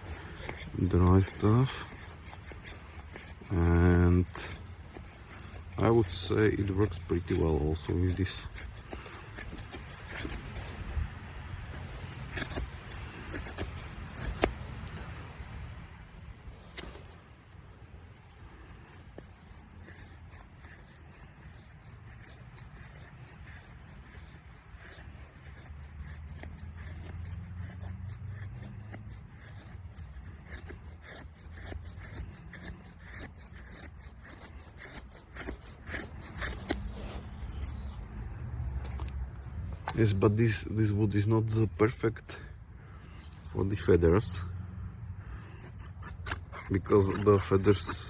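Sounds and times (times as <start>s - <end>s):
knife scraping wood: 0.0s - 15.3s, 16.6s - 48.0s.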